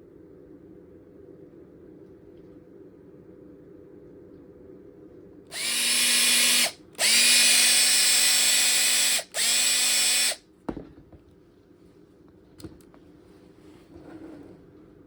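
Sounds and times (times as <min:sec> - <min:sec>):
cordless drill motor whine: 0:05.5 - 0:10.4.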